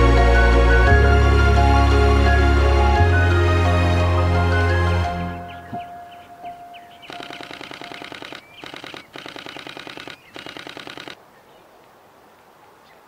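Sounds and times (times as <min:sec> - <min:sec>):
camera shutter rapid clicks: 0:07.1 - 0:11.2.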